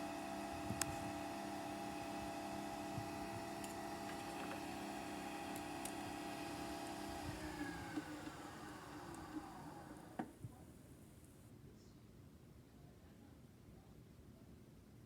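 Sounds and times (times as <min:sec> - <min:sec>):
coffee machine motor hum: 0:00.0 - 0:10.4.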